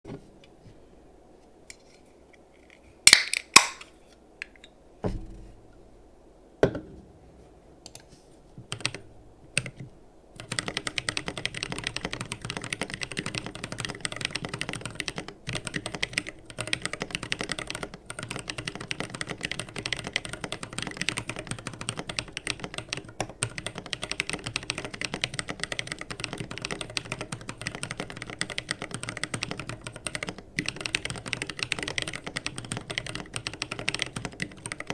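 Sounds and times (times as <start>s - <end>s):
mechanical keyboard typing: 8.7s - 9.0s, 10.4s - 34.9s.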